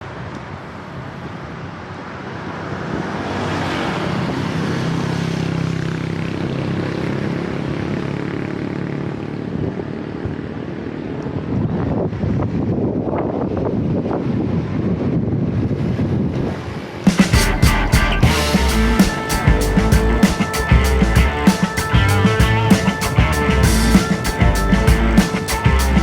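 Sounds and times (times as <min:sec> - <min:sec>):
wind noise on microphone: 0:09.5 - 0:26.0
motor engine humming: 0:17.1 - 0:26.0.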